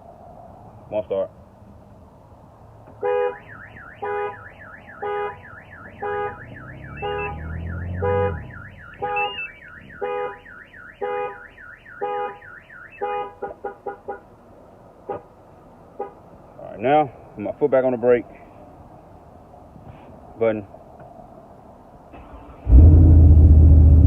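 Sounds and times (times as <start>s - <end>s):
alarm horn blasts: 3.0s - 13.5s
car alarm siren warbling: 3.3s - 13.1s
alarm short chirps: 5.9s - 10.1s.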